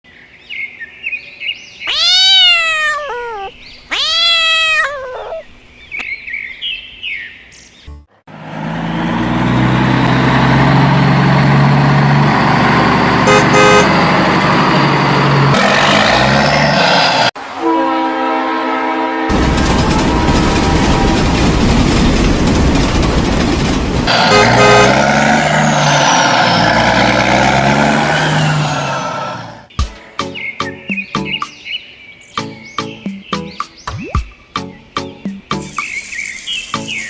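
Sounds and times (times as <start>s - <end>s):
high chirping calls: 0.6s - 8.0s, 30.2s - 37.0s
vehicle engine running: 8.3s - 16.6s, 22.8s - 26.4s.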